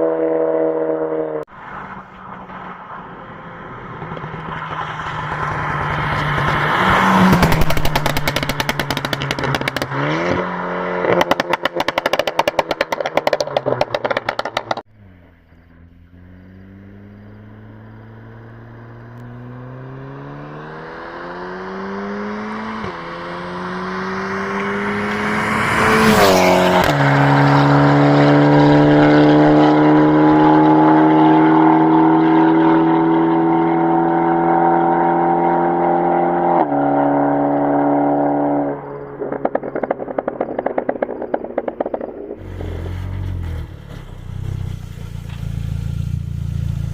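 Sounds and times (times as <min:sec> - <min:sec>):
car accelerating hard: 0:00.0 - 0:46.9
car engine revving: 0:00.0 - 0:46.9
exhaust pops and bangs: 0:03.9 - 0:10.0, 0:11.1 - 0:14.9, 0:39.2 - 0:43.2.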